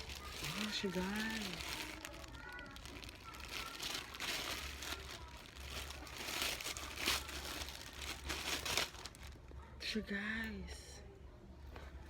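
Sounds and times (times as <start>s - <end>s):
packaging crinkling and rustling: 0.0s - 9.6s.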